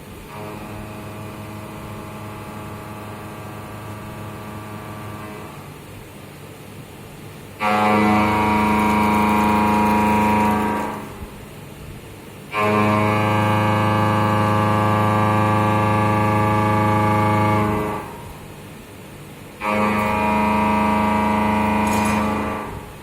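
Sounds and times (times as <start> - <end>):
metal lathe cutting hum: 7.6 - 11.2, 12.6 - 18.2, 19.6 - 22.8.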